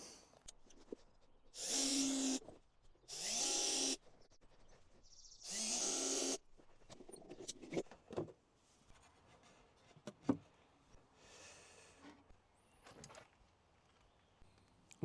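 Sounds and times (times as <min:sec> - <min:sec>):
power drill driving screws: 0:01.6 - 0:02.4, 0:03.1 - 0:04.0, 0:05.4 - 0:06.4.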